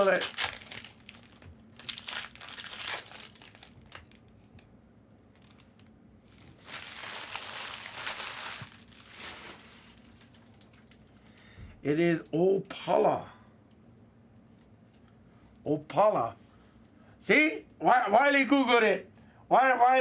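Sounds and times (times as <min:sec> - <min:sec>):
card pack wrappers crinkling: 0:00.0 - 0:04.6, 0:05.3 - 0:11.5.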